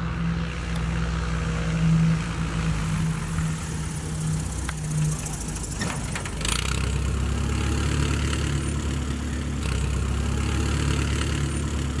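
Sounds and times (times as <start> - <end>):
airplane engine droning: 0.0 - 6.5.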